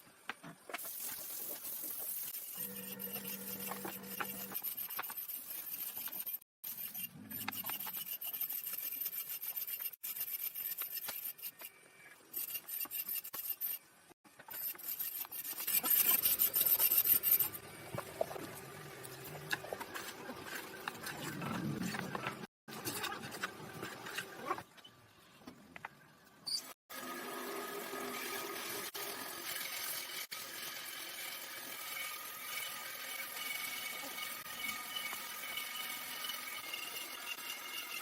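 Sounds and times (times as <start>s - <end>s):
sanding on wood: 2.0s - 11.7s, 14.6s - 17.6s.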